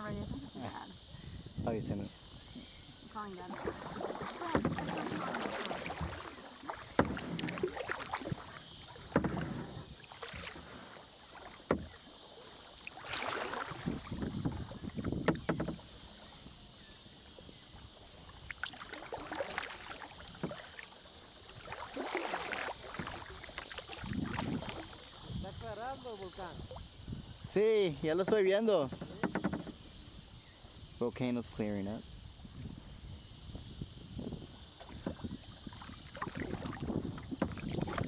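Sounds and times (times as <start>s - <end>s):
paddle splashing through water: 2.3s - 27.1s, 34.3s - 38.0s.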